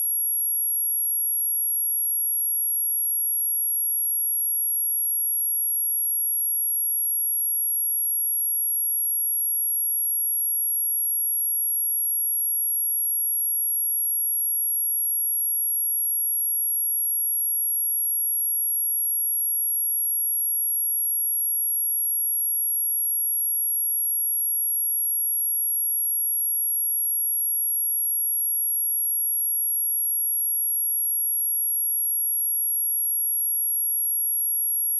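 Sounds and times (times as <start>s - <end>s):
high-pitched sine test tone: 0.0s - 2.9s, 10.8s - 34.9s.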